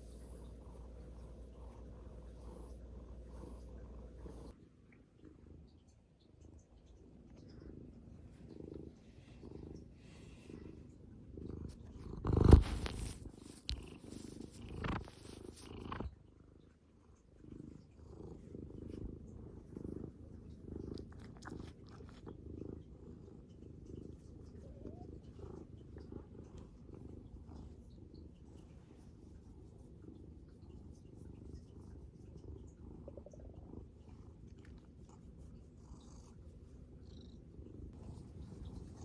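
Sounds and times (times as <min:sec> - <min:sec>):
cat purring: 0:00.0 - 0:39.0
rustling: 0:11.8 - 0:16.0.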